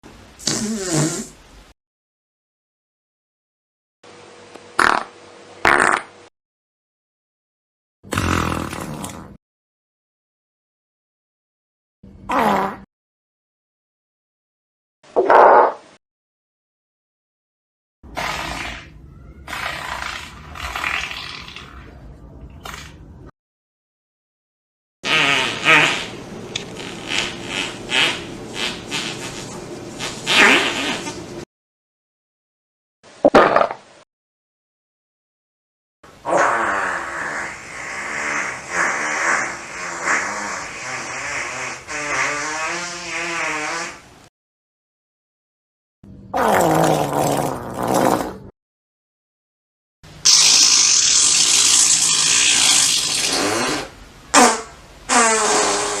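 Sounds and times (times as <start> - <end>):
long fart in short bursts: 0.4 - 1.4, 4.7 - 6.3, 8.1 - 9.4, 12.3 - 12.9, 18.1 - 21.6, 25.0 - 31.2, 36.2 - 44.2, 46.3 - 48.5, 50.2 - 56.0.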